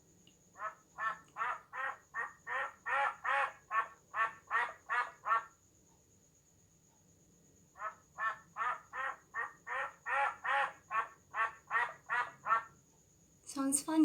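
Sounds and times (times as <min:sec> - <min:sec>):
duck quacking: 0:07.8 - 0:12.7.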